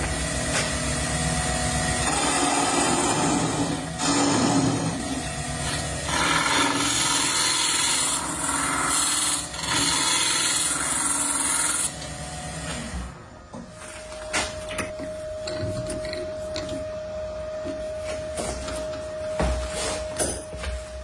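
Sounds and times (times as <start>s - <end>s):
tool rasping wood: 5.7s - 11.9s.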